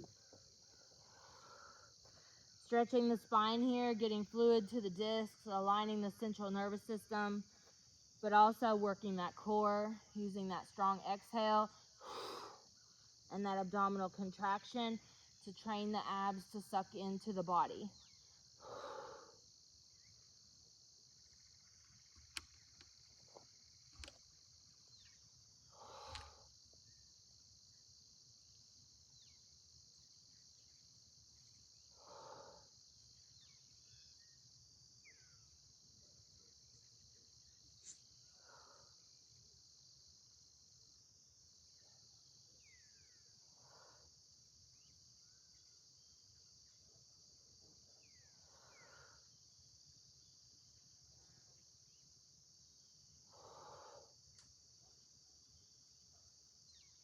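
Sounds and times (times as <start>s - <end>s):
crickets chirring: 0.0s - 57.0s
small clicks: 22.1s - 24.2s.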